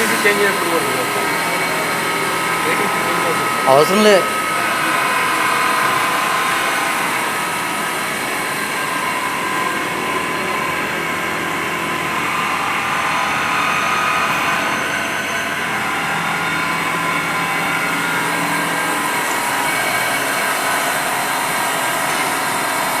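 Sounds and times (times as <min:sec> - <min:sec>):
milling machine running: 0:00.0 - 0:23.0
steady high machine tones: 0:00.0 - 0:23.0.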